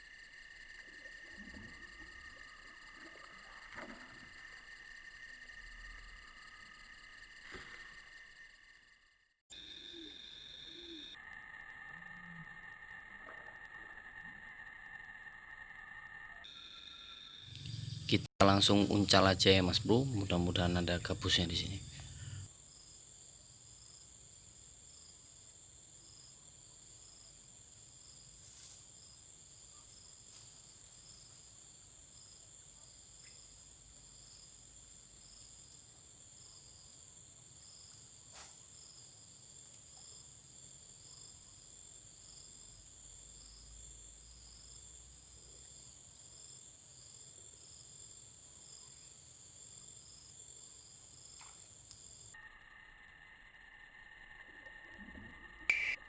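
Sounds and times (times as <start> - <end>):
crickets chirping chorus: 0.0 - 56.0
pulsing insect call: 0.0 - 56.0.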